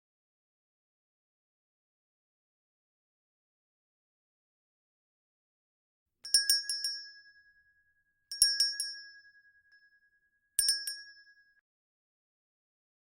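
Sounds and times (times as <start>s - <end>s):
handbell ringing: 6.3s - 7.5s, 8.3s - 9.5s, 10.6s - 11.4s.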